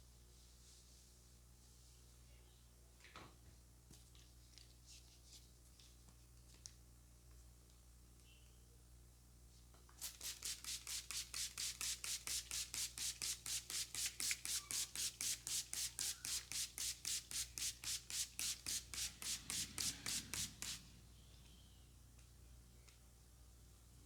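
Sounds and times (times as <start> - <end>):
hands rubbing briskly: 10.0 - 20.8.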